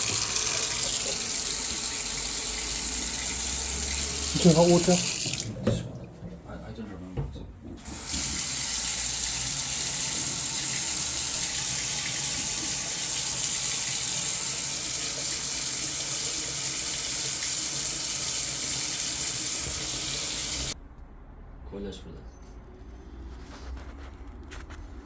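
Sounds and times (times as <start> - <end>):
tap running into a sink: 0.0 - 6.0, 7.8 - 20.8.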